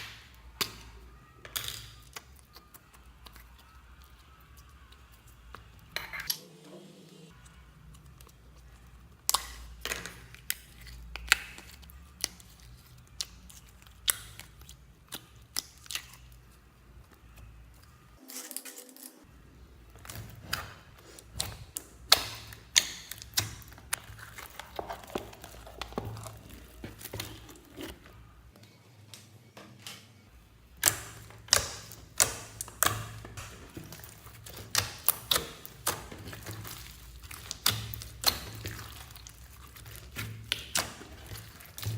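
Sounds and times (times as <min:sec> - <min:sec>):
slime clicking and popping: 0:09.2 - 0:12.5, 0:13.1 - 0:16.3, 0:21.3 - 0:27.4, 0:30.7 - 0:41.9.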